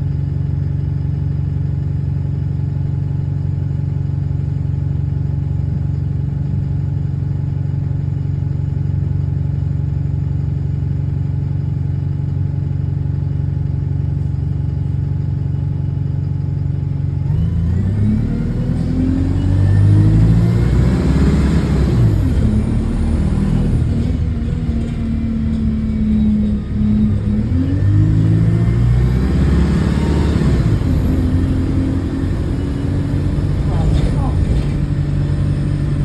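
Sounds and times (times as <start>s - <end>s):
bus diesel engine: 0.0s - 36.0s.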